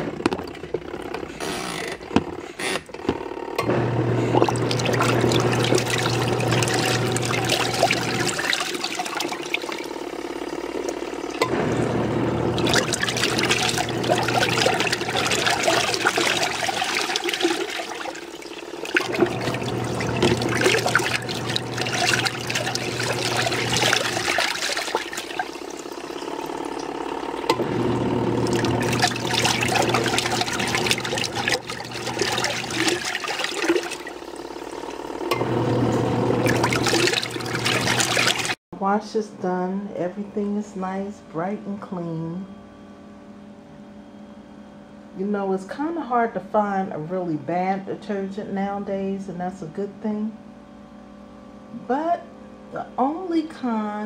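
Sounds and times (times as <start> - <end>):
washing machine motor churning: 0.0 - 39.0
water sloshing: 4.3 - 10.2, 12.5 - 27.0, 28.4 - 34.4, 36.4 - 38.6.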